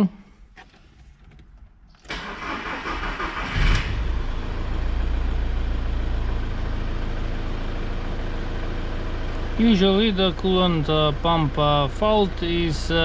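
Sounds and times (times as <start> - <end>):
diesel engine idling: 1.8 - 13.0
starter motor cranking: 2.0 - 4.0.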